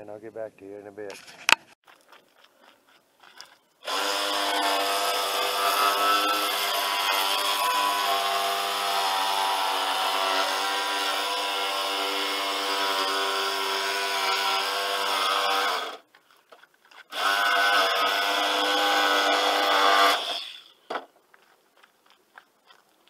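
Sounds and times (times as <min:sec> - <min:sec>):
power tool motor whining: 0:03.8 - 0:16.0, 0:17.1 - 0:20.8.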